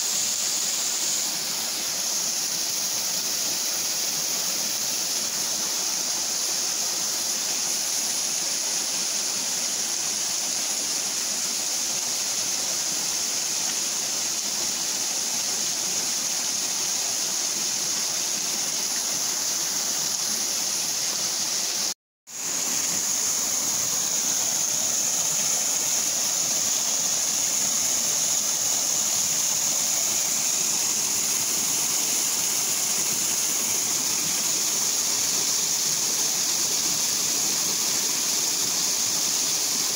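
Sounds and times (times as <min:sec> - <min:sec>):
waterfall rushing: 0:20.6 - 0:39.9.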